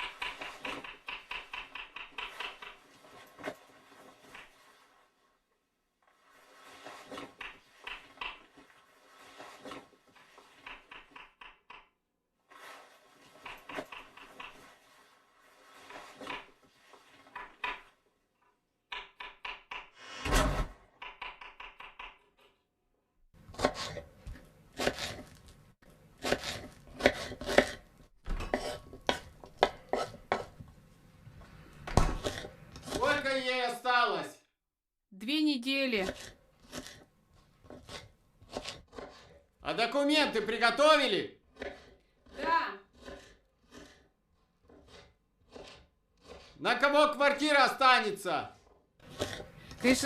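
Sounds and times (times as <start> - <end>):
knife chopping on cutting board: 23.5 - 25.4, 26.2 - 27.8, 28.5 - 30.6, 32.0 - 33.1, 37.6 - 39.4, 44.7 - 46.6.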